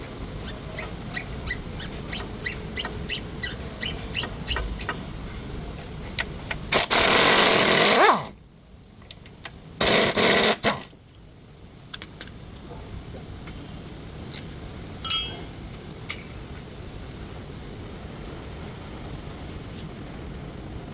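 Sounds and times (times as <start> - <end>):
short squeak: 0.4 - 5.0.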